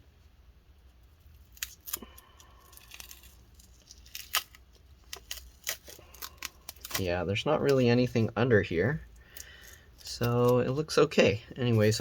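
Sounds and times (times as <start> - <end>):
tape peeling with small crackles: 0.8 - 8.3, 9.0 - 10.9.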